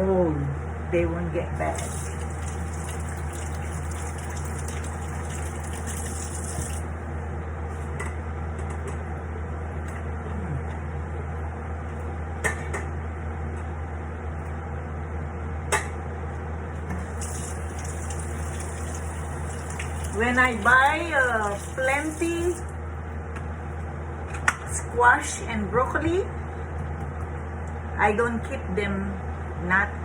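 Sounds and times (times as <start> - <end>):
constant low hum: 0.0 - 30.0
water boiling in a pot: 1.6 - 7.1, 17.0 - 22.8.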